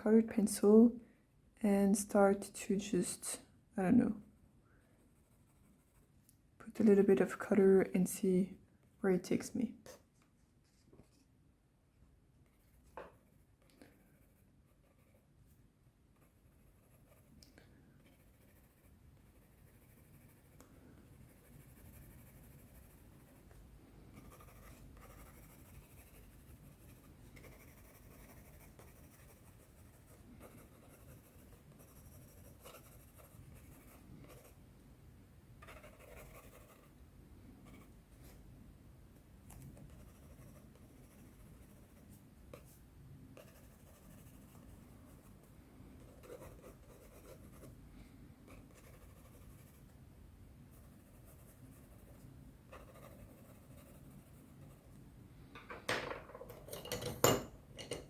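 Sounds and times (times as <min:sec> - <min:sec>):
pencil scratching on paper: 0:05.0 - 0:06.2, 0:12.4 - 0:17.4, 0:18.0 - 0:34.6, 0:35.6 - 0:36.9, 0:37.6 - 0:38.4, 0:39.7 - 0:42.8, 0:43.4 - 0:47.8, 0:48.5 - 0:50.0, 0:50.7 - 0:55.0.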